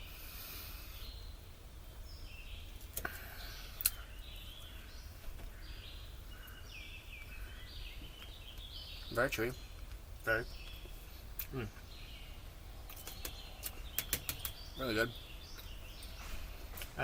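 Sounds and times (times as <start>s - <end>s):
sharp clicks: 12.9s - 14.6s.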